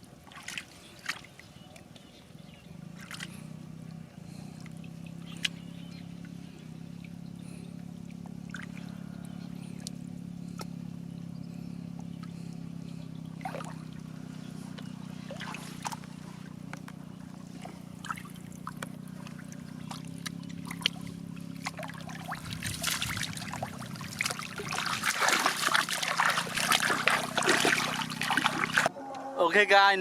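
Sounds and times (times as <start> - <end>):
water splashing and sloshing: 0.0 - 2.2, 2.8 - 29.3
steady low hum: 1.7 - 29.3
water trickling and dripping: 18.0 - 28.9.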